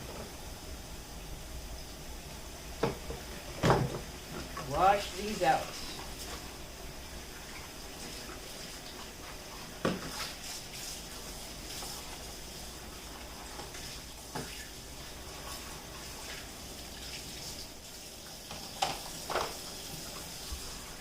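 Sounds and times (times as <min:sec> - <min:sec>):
tap running into sink: 0:02.8 - 0:04.7, 0:09.8 - 0:10.3, 0:13.5 - 0:14.7, 0:18.4 - 0:20.7.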